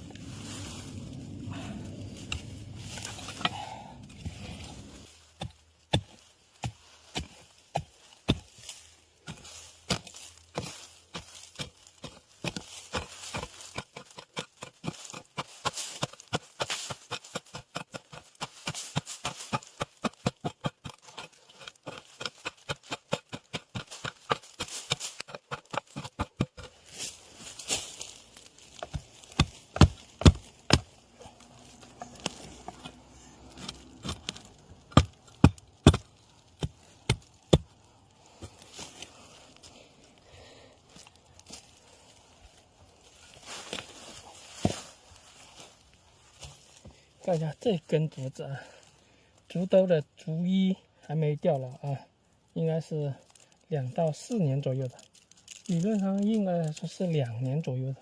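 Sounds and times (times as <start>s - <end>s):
hoe chopping into soil: 1.8s - 39.1s, 43.3s - 45.0s.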